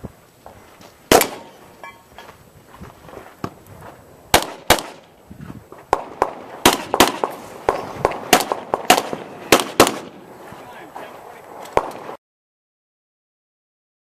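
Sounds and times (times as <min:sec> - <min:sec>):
pistol shots: 0:01.1 - 0:01.6, 0:04.3 - 0:05.1, 0:05.9 - 0:10.3, 0:11.7 - 0:12.1.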